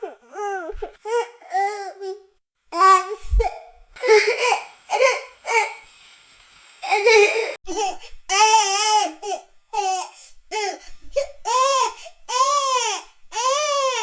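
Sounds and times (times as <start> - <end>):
baby sobbing: 3.4 - 5.8, 6.9 - 14.0.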